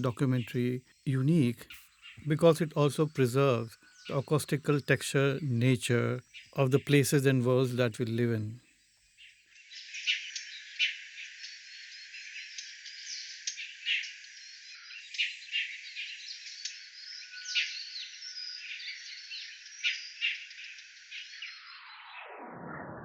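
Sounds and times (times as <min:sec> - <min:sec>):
birds chirping and calling: 0:00.0 - 0:08.6.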